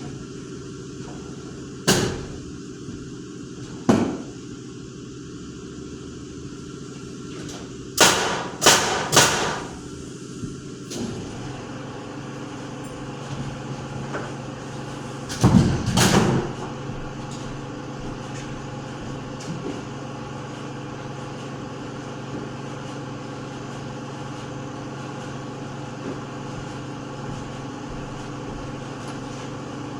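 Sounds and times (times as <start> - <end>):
machine hum: 7.8 - 29.9.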